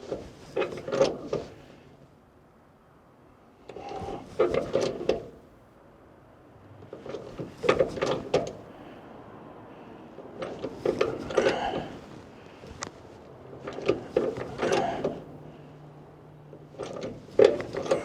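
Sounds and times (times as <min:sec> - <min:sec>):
hand tools clattering on metal: 0:16.8 - 0:18.0.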